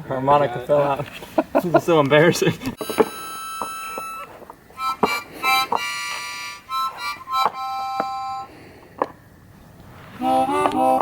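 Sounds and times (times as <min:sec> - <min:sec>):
harmonica chords: 0:02.8 - 0:08.7, 0:10.2 - 0:11.0.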